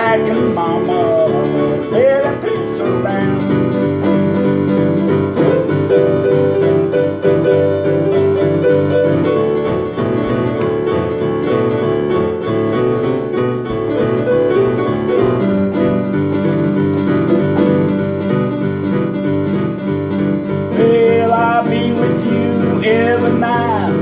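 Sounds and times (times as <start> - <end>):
country song piano solo: 0.0 - 24.0
steady beat: 12.6 - 19.8.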